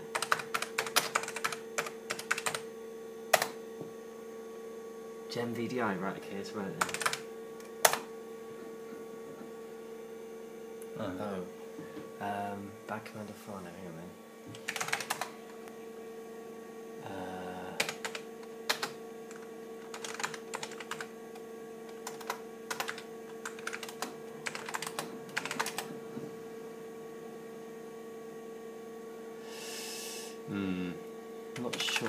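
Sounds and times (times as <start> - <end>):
computer hum: 0.0 - 32.0
keyboard clicks: 17.8 - 21.1, 21.9 - 25.9
short hiss: 29.4 - 30.4.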